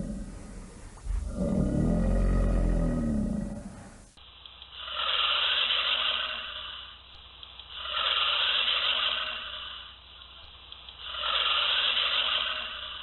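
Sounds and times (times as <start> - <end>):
alligator bellowing: 0.0 - 4.1
alligator hissing: 0.0 - 4.2, 4.8 - 6.9, 7.7 - 9.9, 11.0 - 13.0.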